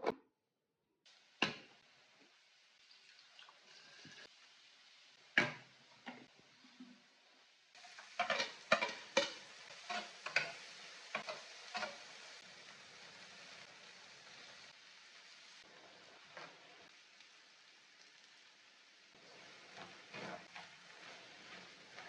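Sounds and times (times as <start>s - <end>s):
food sizzling: 1.1s - 22.0s
utensil scraping against a pot: 7.8s - 12.2s, 19.2s - 22.0s.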